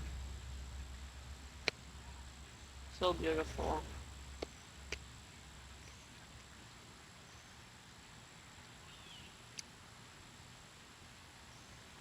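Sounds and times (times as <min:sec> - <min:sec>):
faint steady hiss: 0:00.0 - 0:12.0
faint bird chirp: 0:05.8 - 0:06.2, 0:07.2 - 0:07.7, 0:08.7 - 0:09.6, 0:11.4 - 0:12.0.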